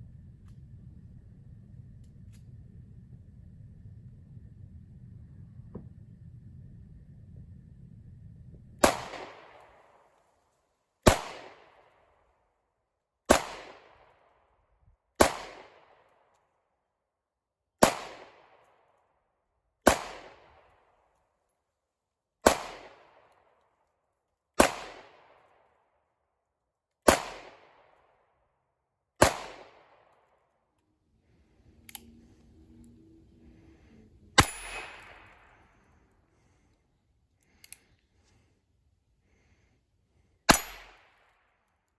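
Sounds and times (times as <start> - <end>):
gunshots with ringing echo: 8.8 - 9.9, 11.0 - 11.8, 13.3 - 14.1, 15.2 - 15.9, 17.8 - 18.5, 19.8 - 20.6, 22.4 - 23.2, 24.6 - 25.3, 27.1 - 27.9, 29.2 - 30.0, 34.4 - 35.6, 40.5 - 41.2.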